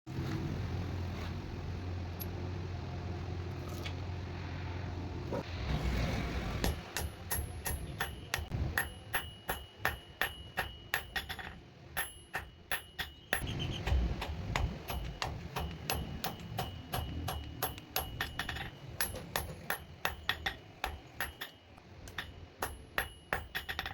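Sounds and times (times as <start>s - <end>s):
hammer striking iron on anvil: 6.6s - 23.9s.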